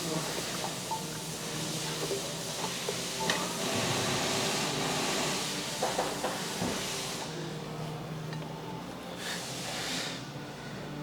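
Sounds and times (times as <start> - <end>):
steady hiss: 0.0 - 7.4.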